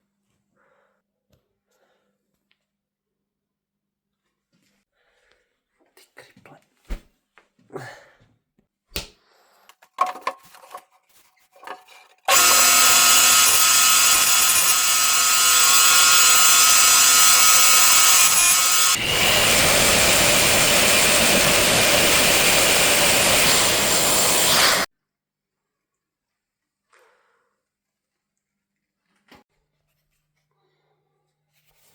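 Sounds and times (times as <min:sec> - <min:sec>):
harsh rough power tool: 0:12.3 - 0:24.9
power tool on wood: 0:12.3 - 0:24.9.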